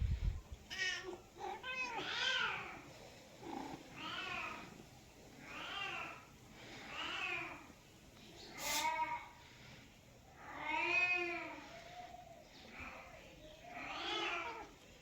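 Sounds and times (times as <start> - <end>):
cat meowing: 0.7 - 2.8, 13.7 - 14.7.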